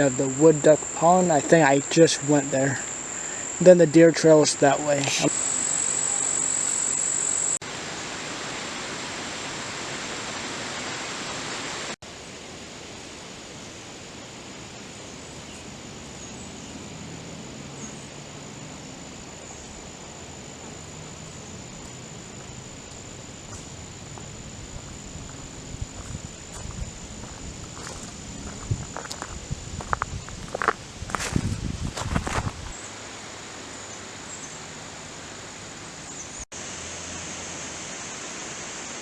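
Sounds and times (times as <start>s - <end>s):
insects trilling: 0.0s - 7.6s, 13.5s - 36.4s
outdoor hiss: 0.0s - 39.0s.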